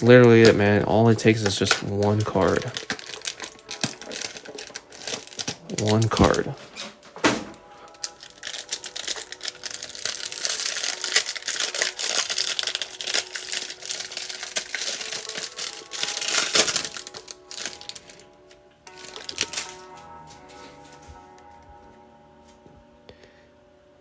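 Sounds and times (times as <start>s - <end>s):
plastic wrapper crinkling: 0.0s - 20.9s.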